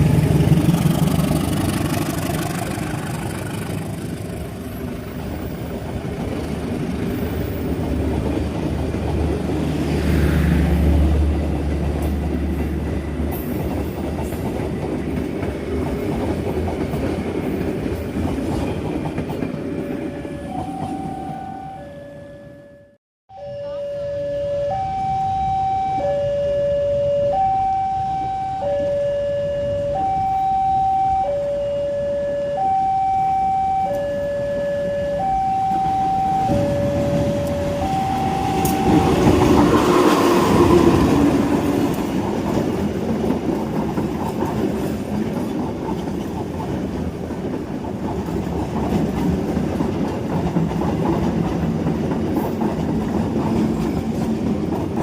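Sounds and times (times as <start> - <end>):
train passing: 0.0 - 55.0
level crossing alarm two-tone: 20.1 - 39.6
wheels clattering over rail joints: 36.5 - 55.0.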